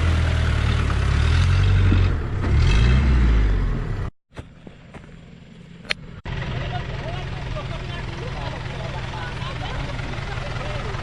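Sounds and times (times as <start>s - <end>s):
engine revving under load: 0.0s - 4.1s.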